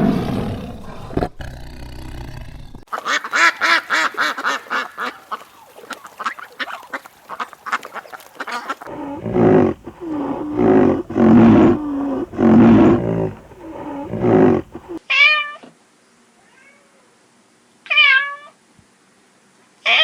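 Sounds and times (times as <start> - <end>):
low drawn-out animal calls: 8.5 - 15.0.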